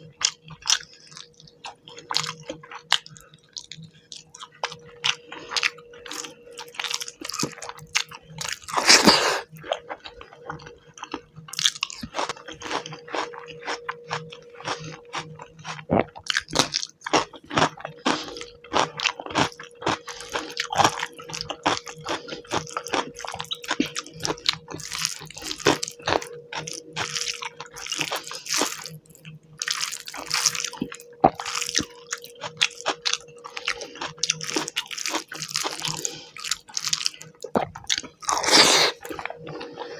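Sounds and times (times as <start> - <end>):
wet chewing and smacking: 0.2 - 39.9.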